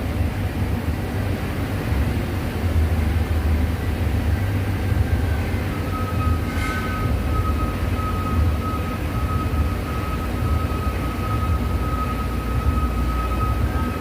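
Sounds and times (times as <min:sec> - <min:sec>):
thin steady whine: 0:00.0 - 0:14.0.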